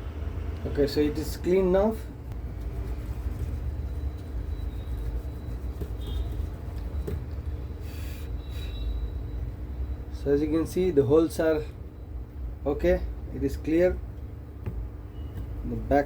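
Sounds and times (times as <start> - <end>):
low mechanical hum: 0.0 - 16.0
faint high whine: 0.8 - 13.0.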